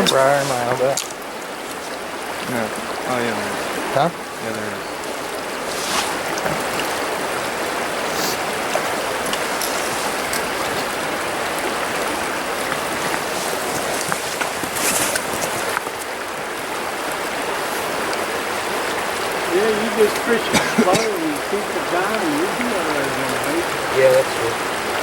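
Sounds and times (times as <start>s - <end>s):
creek water running: 0.0s - 25.0s
brief rustles or scrapes: 5.7s - 6.2s, 13.4s - 15.6s.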